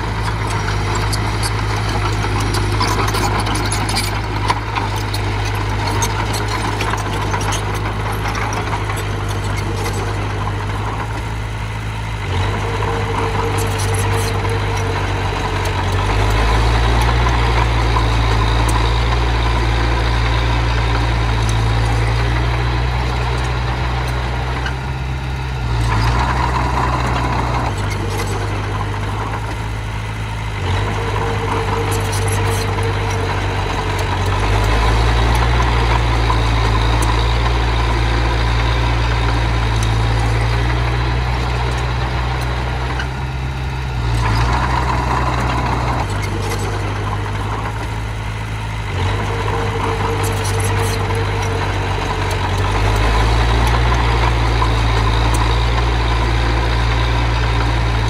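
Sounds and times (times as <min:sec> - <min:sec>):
diesel engine running: 0:00.0 - 0:58.0.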